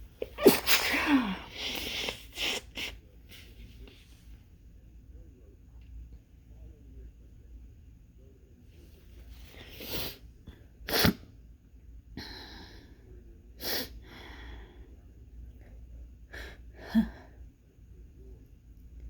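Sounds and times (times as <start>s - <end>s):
person sneezing: 0.2s - 3.0s, 10.9s - 11.2s.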